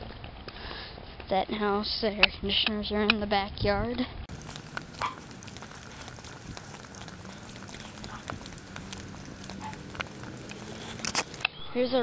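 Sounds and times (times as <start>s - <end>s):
footsteps on pavement: 4.3s - 11.4s.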